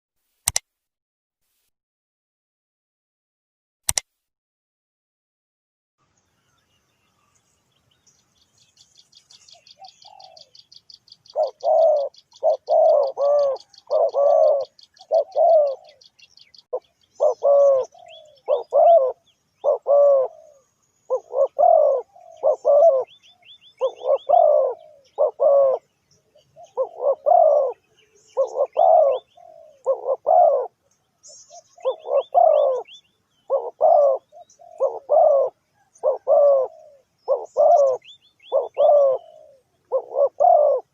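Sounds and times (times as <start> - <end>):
dove cooing: 9.1 - 40.9.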